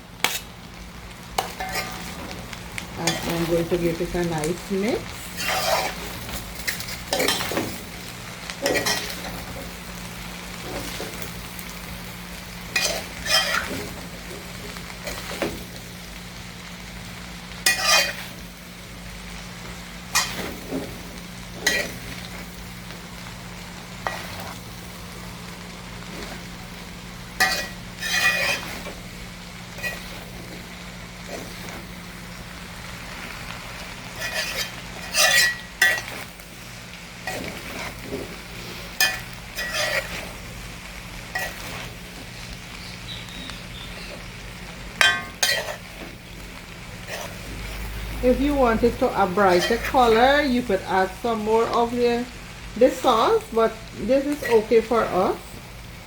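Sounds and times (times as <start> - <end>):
food sizzling in a pot: 0.0 - 56.0
utensil scraping against pot: 0.2 - 0.5, 1.4 - 2.3, 5.1 - 7.8, 8.6 - 9.6, 12.7 - 14.0, 17.6 - 18.4, 20.1 - 21.0, 21.6 - 22.4, 27.4 - 29.0, 29.8 - 30.6, 34.1 - 36.3, 37.2 - 40.4, 41.3 - 42.5, 45.0 - 46.3, 47.0 - 51.9, 54.2 - 55.2.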